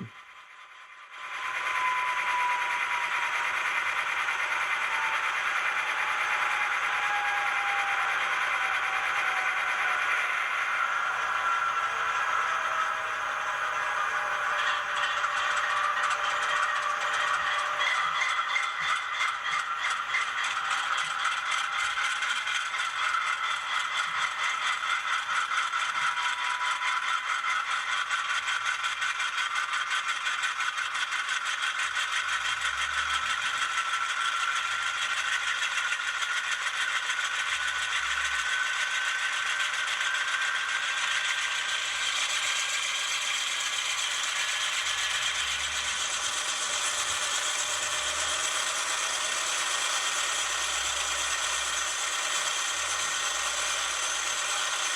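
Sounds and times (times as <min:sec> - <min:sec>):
model train wheels rattling: 0:13.7 - 0:54.9.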